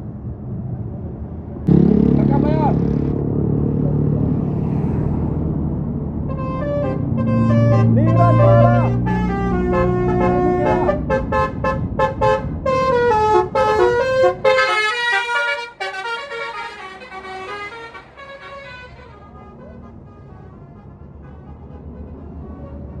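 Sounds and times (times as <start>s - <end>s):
bus engine rumbling: 0.0s - 23.0s
musical bus horn tune: 6.3s - 23.0s.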